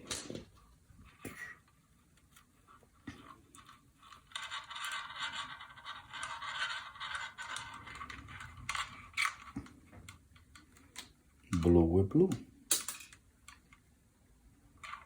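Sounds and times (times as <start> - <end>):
wires scraping and rustling: 0.0 - 11.8.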